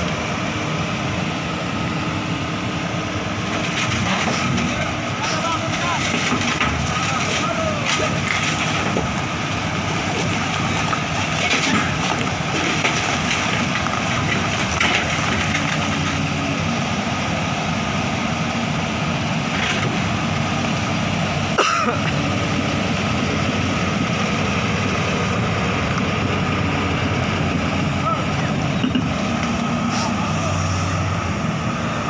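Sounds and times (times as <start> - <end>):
excavator diesel engine running: 0.0 - 32.0.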